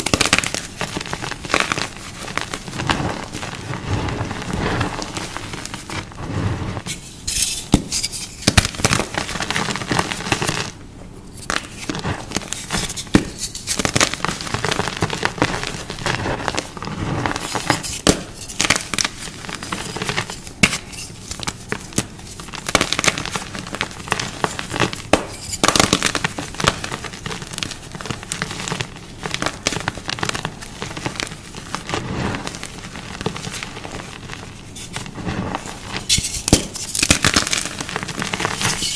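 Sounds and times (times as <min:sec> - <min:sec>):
sharp crunches and crackles: 0:11.4 - 0:38.9.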